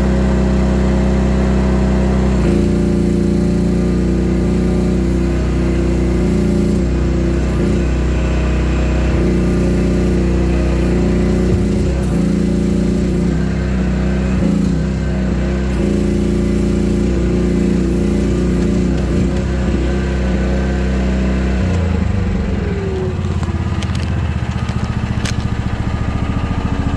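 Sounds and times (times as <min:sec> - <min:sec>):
excavator engine running: 0:00.0 - 0:26.9.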